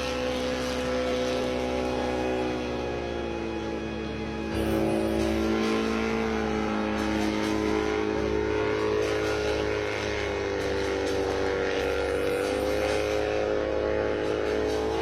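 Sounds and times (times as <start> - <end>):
helicopter engine running: 0.0 - 15.0.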